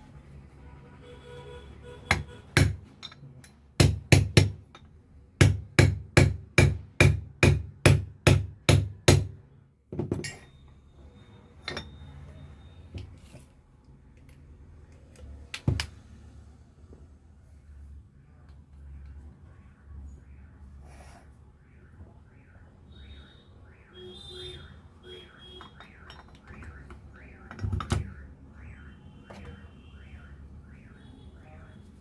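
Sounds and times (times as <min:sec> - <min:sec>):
hammer striking metal: 0:02.1 - 0:09.4.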